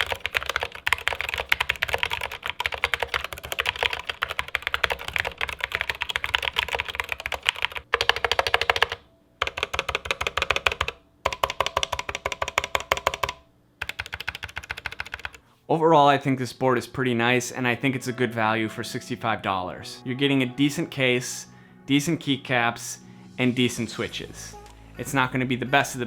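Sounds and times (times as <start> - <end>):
fast keyboard typing: 0.0 - 15.4.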